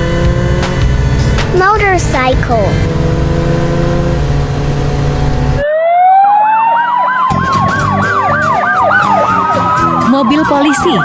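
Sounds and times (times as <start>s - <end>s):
engine rumble: 0.0s - 5.6s
police siren wailing: 5.4s - 11.0s
siren yelp: 5.6s - 11.0s.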